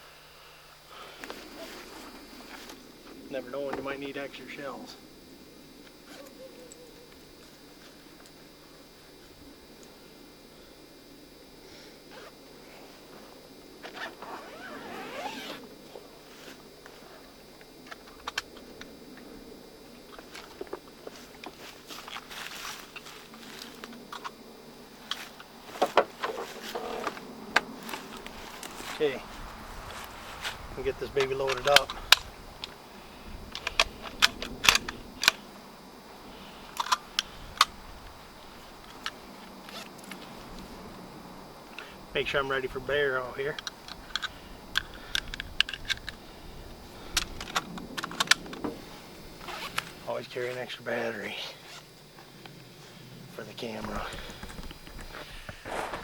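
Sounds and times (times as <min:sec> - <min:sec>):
clothing and gear rustling: 0:01.2 - 0:03.2, 0:12.1 - 0:17.4, 0:20.1 - 0:24.3, 0:25.0 - 0:32.4, 0:36.4 - 0:41.1, 0:47.2 - 0:50.1.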